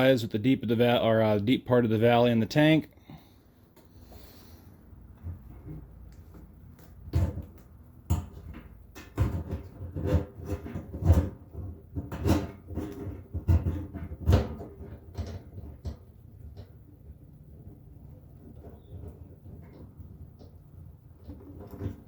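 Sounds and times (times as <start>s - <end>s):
metal knocks and clunks: 7.0s - 16.9s.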